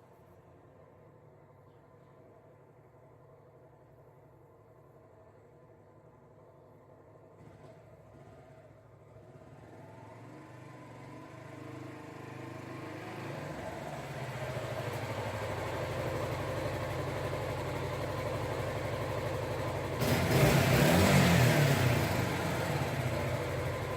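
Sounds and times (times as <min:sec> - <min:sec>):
motorcycle engine approaching: 0:07.4 - 0:23.9
motorcycle engine revving: 0:18.6 - 0:23.9.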